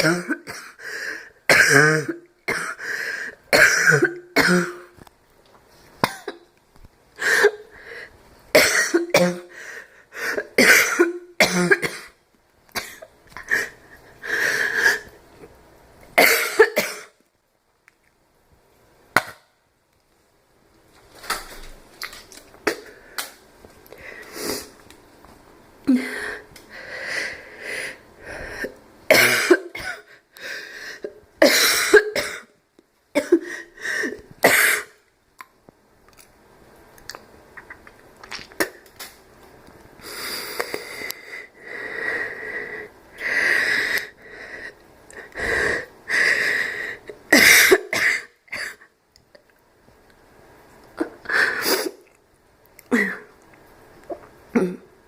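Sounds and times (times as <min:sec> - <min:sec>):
person coughing: 0:00.0 - 0:00.8, 0:01.5 - 0:02.8, 0:03.5 - 0:04.9, 0:06.0 - 0:06.4, 0:08.6 - 0:09.5, 0:10.3 - 0:12.2, 0:16.2 - 0:17.2, 0:29.1 - 0:30.1, 0:31.4 - 0:32.5.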